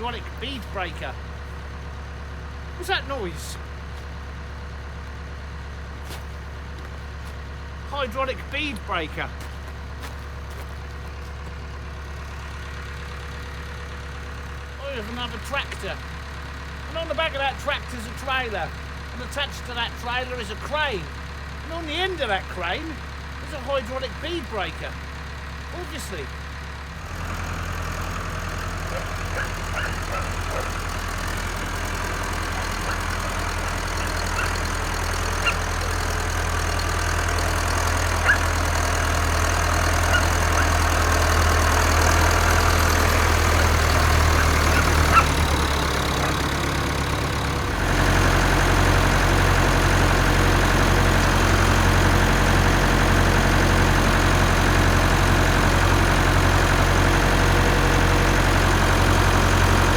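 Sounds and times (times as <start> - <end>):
tractor engine running: 0.0 - 59.9.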